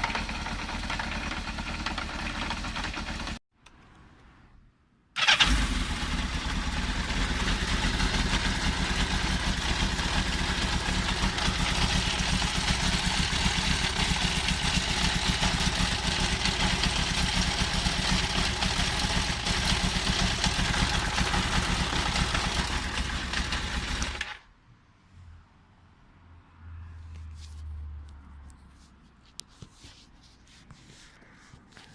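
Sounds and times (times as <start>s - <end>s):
motorcycle engine idling: 0.0s - 3.4s, 5.2s - 24.4s.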